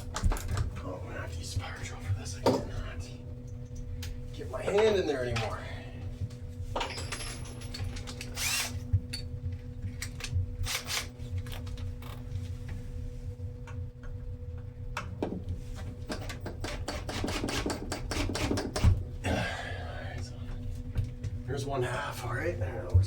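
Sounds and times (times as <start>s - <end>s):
steady low hum: 0.0s - 23.0s
hand tools and metal hardware clattering: 6.8s - 9.3s.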